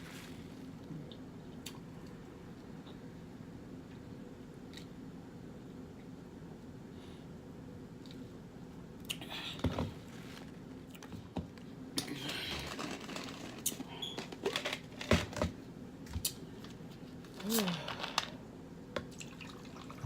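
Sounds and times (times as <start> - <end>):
eating with wet smacks and clicks: 3.9 - 5.0, 9.0 - 9.3.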